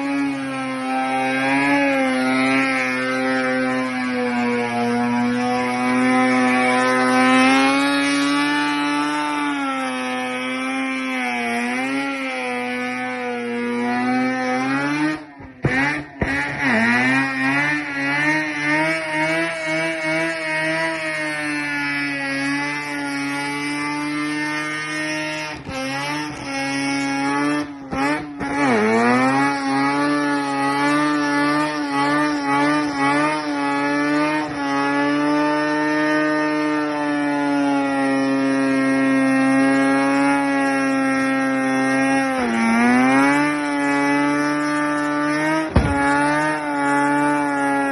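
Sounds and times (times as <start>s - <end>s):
engine revving high: 0.0s - 47.9s.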